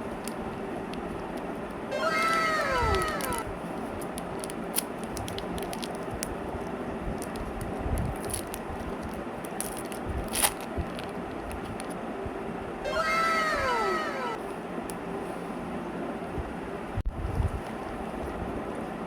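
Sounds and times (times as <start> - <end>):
wrapper crinkling: 0.0 - 6.4, 7.1 - 12.0.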